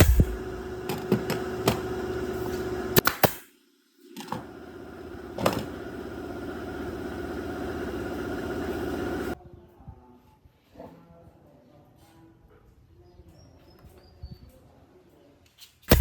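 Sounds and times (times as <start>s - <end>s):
machine motor running: 0.0s - 3.3s, 4.0s - 9.4s.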